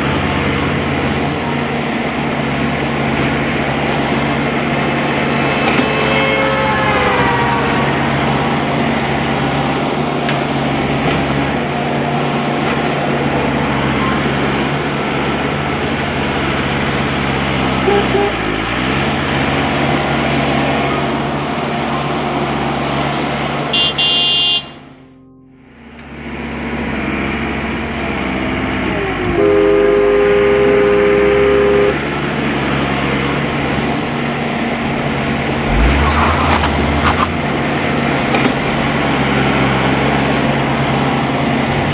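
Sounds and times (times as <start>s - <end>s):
engine running: 0.0s - 41.9s
two-note horn blast: 3.1s - 9.9s, 17.9s - 18.8s, 23.7s - 27.2s, 28.8s - 32.6s, 34.8s - 39.8s.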